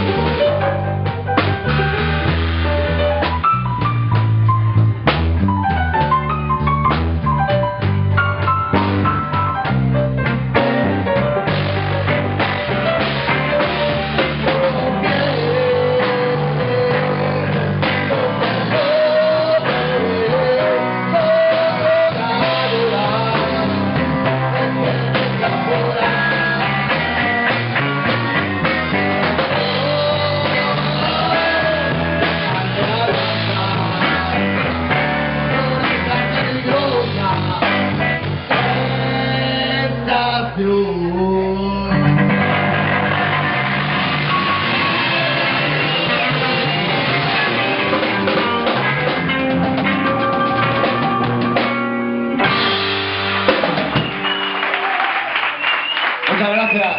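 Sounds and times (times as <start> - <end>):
blues-rock song with guitar: 0.0 - 40.7, 41.9 - 54.7.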